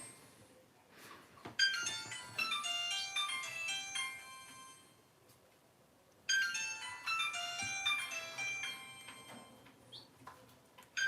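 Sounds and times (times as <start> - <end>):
mobile phone ringtone melody: 1.6 - 5.0, 6.3 - 9.7.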